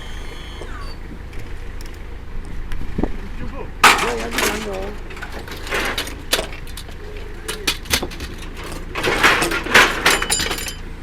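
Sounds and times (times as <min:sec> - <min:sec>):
scrap metal clanking: 0:03.8 - 0:11.0.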